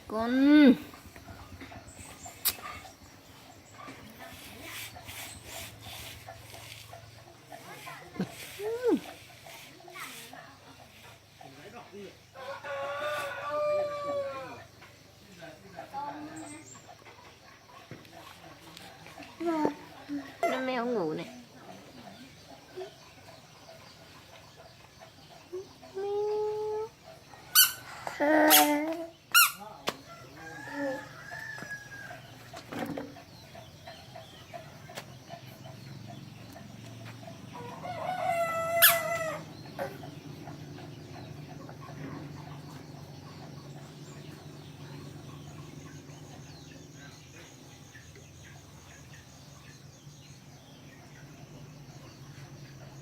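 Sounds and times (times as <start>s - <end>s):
chickens clucking: 0.2s - 29.0s, 29.6s - 51.4s
rooster crowing: 12.4s - 14.7s, 30.1s - 32.4s, 37.5s - 39.6s.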